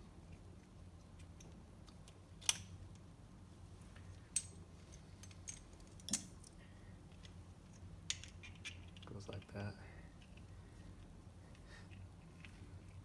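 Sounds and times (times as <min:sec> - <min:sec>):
faint steady hum: 0:00.0 - 0:13.0
metal parts clicking: 0:05.2 - 0:06.3.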